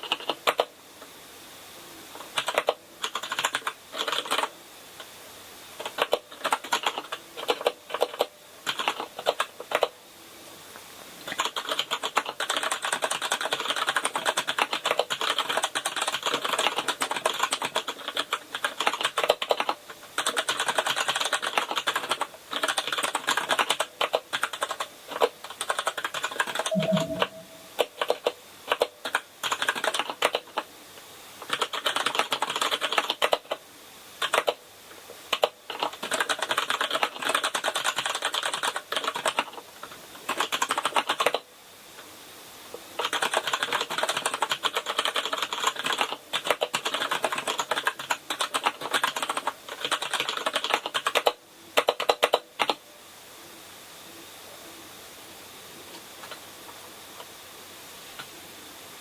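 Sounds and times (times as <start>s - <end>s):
mechanical keyboard typing: 0.0s - 0.7s, 2.3s - 4.5s, 5.8s - 10.0s, 11.3s - 30.7s, 31.4s - 33.6s, 34.2s - 34.6s, 35.3s - 39.6s, 40.2s - 41.4s, 43.0s - 52.8s.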